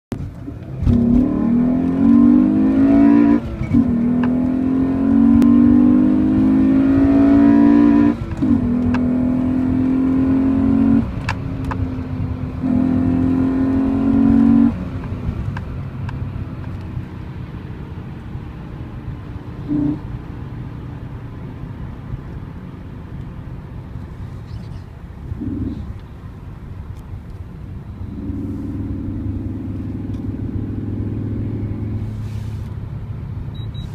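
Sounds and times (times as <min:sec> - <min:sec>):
car engine revving through gears: 0:00.2 - 0:17.1, 0:19.6 - 0:20.2, 0:24.0 - 0:26.2, 0:28.0 - 0:32.8.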